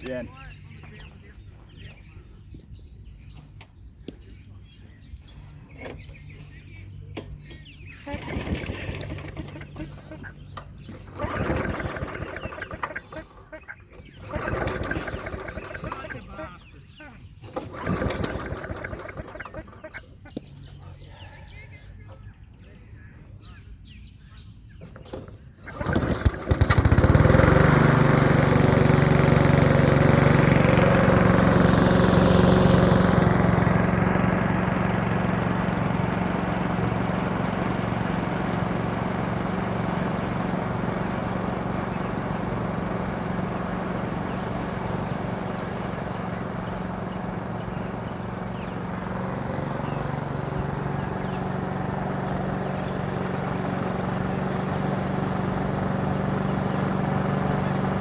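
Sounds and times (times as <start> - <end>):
lawn mower engine running: 4.9 - 21.0, 24.8 - 58.0.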